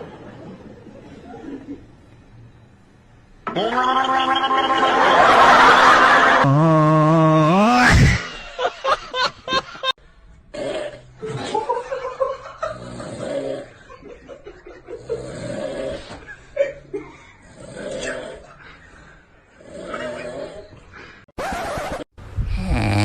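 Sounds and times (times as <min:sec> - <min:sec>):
people laughing: 0:00.0 - 0:02.0, 0:03.8 - 0:06.5, 0:08.2 - 0:09.9, 0:11.3 - 0:12.8
person snoring: 0:06.4 - 0:08.2, 0:22.4 - 0:23.0.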